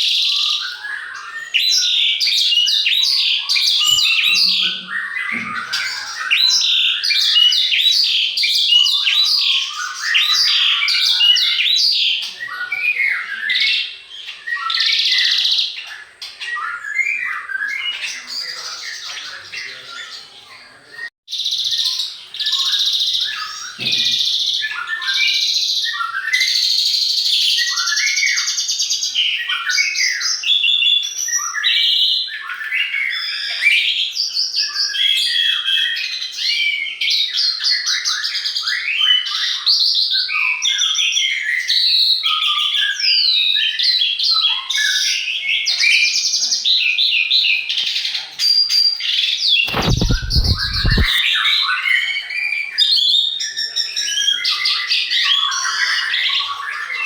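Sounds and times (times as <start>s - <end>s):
songbirds chirping and whistling: 0.0s - 57.0s
brief low rumble: 49.7s - 51.2s.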